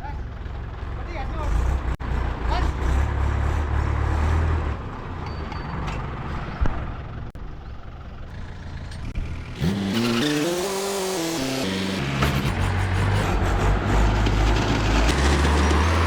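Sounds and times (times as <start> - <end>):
tractor engine running: 5.2 - 16.0.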